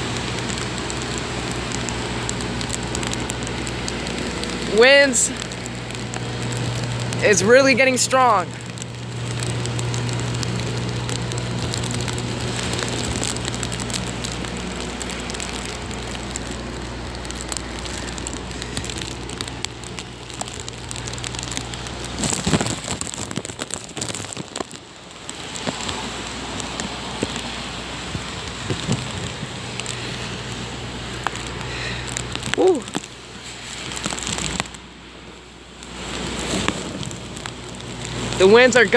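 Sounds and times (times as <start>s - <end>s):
steady low hum: 0.0s - 23.2s
heavy rain: 0.0s - 38.9s.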